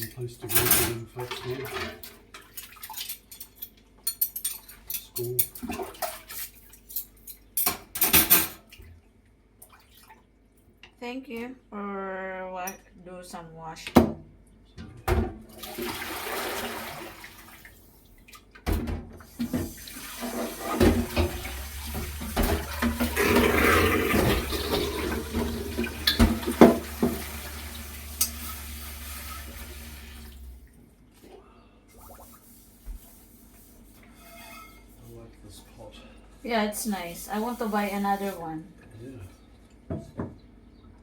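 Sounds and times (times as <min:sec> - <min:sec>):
dishes knocking and clinking: 0:14.8 - 0:15.4, 0:18.6 - 0:27.3, 0:28.2 - 0:28.5, 0:39.9 - 0:40.4
tap water running into sink: 0:18.6 - 0:30.7.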